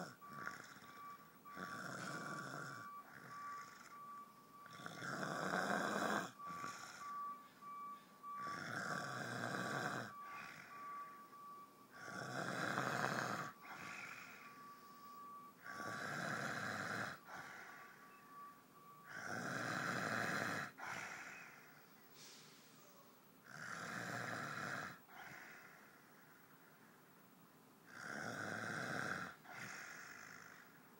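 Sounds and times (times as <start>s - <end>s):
man snoring: 0.0s - 7.2s, 8.2s - 11.0s, 11.9s - 18.0s, 19.0s - 21.7s, 23.4s - 26.0s, 27.9s - 30.8s.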